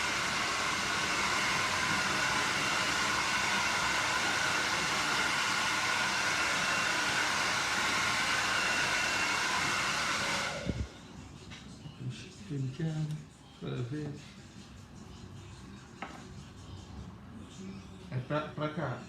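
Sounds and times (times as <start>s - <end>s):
hair dryer blowing: 0.0s - 11.1s.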